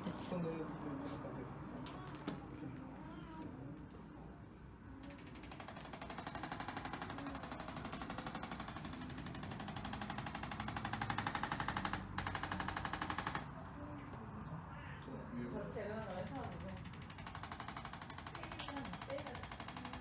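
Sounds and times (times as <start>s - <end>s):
motorized percussion tapping rapidly: 5.4s - 13.5s, 16.3s - 20.0s.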